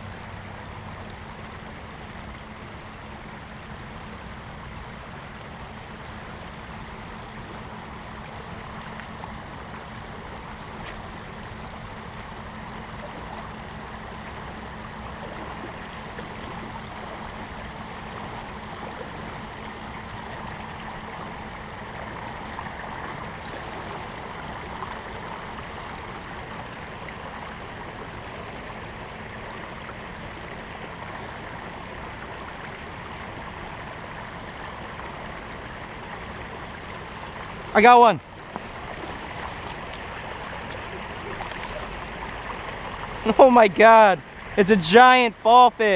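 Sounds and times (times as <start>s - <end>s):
water rushing over rocks: 12.5s - 45.9s.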